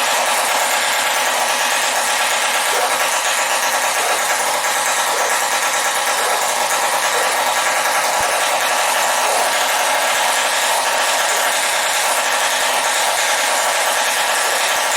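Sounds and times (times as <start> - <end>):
two-stroke engine buzzing: 0.0 - 14.9.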